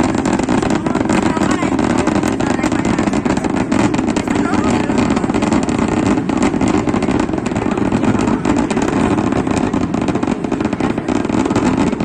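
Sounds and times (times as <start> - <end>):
fireworks explosions: 0.0 - 12.0.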